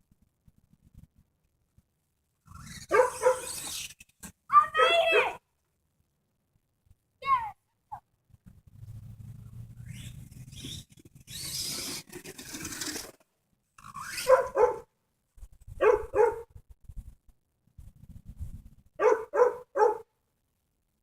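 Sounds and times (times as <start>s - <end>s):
dog barking: 2.9s - 3.6s, 4.8s - 5.4s, 14.2s - 14.9s, 15.8s - 16.5s, 19.0s - 20.1s.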